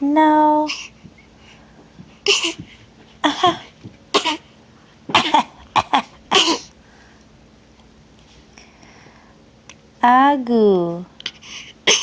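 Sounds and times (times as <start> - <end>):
baby fake-coughing: 2.2 - 4.5, 5.1 - 6.7.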